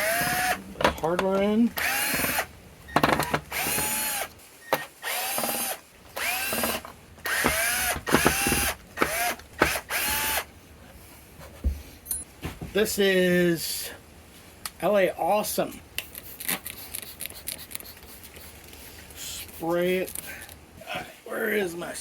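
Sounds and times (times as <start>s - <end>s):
cordless drill spinning: 0.0s - 0.6s, 1.8s - 10.5s.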